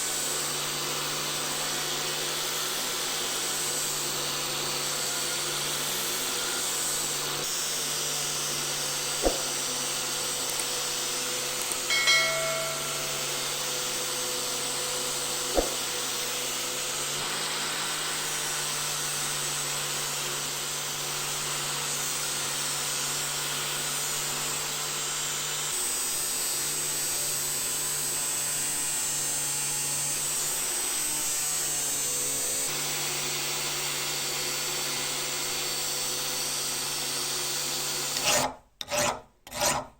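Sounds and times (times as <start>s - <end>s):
electric grinder grinding steel: 0.0s - 39.9s
sharp knocks: 9.2s - 9.6s, 15.6s - 15.8s
ringing squeal: 11.9s - 13.8s.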